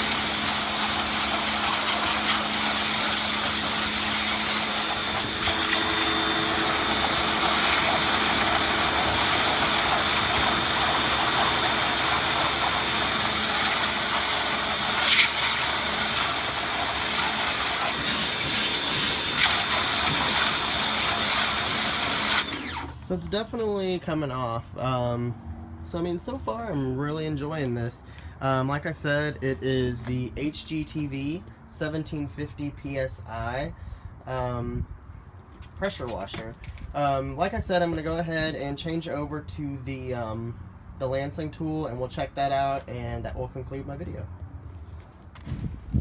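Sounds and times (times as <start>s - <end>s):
high-pressure water jet hissing: 0.0s - 25.0s
pressure washer motor hum: 0.0s - 25.2s.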